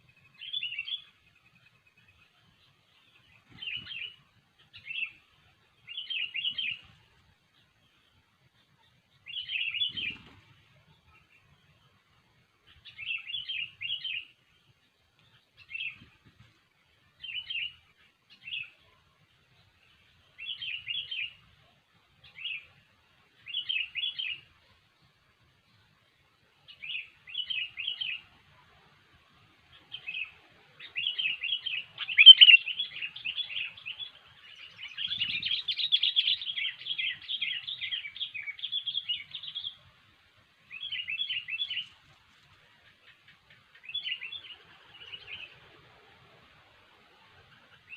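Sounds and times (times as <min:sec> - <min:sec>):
bulbul chirping song: 0:00.0 - 0:07.0, 0:29.7 - 0:39.9, 0:40.7 - 0:42.0.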